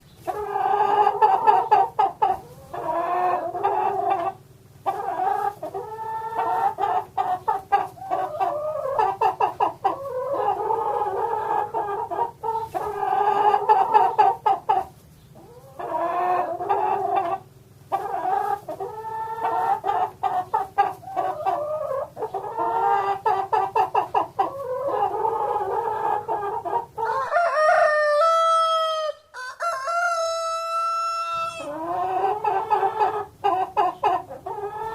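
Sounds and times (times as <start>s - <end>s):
chickens clucking: 0.0s - 34.9s
rooster crowing: 27.0s - 31.8s.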